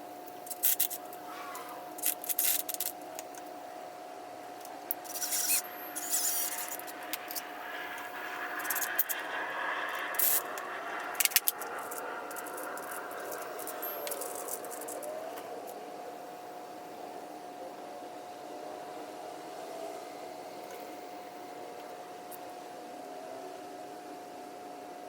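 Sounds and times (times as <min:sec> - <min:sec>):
faint steady hum: 0:00.0 - 0:25.0
metal scraping: 0:04.9 - 0:15.8.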